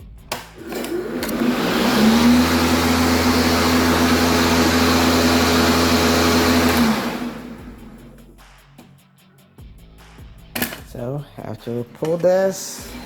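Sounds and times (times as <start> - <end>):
electric lawn mower humming: 0.6 - 8.1.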